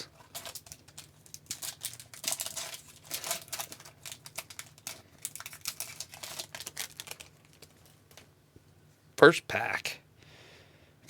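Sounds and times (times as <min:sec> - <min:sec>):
card pack wrapper tearing and crinkling: 0:00.0 - 0:08.2.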